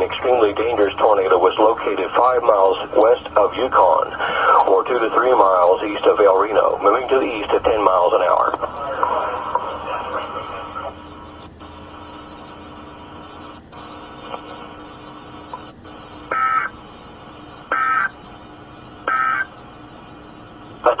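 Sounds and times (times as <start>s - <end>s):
radio hiss: 0.0s - 21.0s
warbling data tone bursts: 8.9s - 16.8s, 17.6s - 20.2s.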